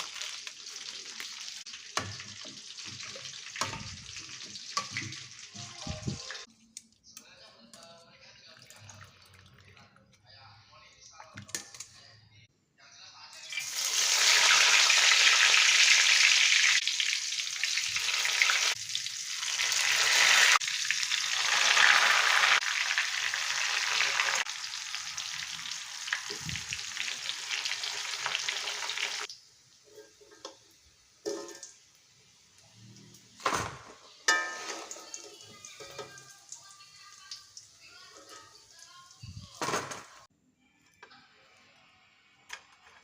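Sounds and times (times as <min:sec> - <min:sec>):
food sizzling in frying oil: 0:00.0 - 0:06.5, 0:13.4 - 0:33.4.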